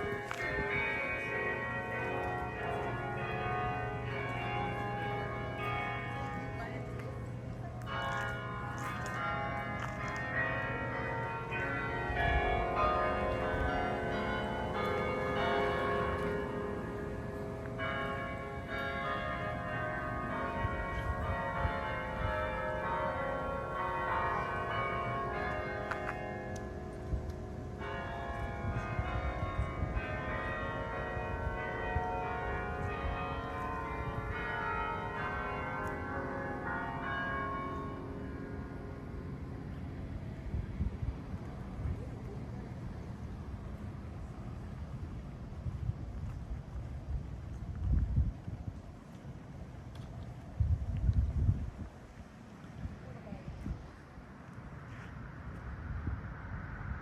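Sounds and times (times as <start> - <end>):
tower bells chiming a tune: 0.0 - 40.6.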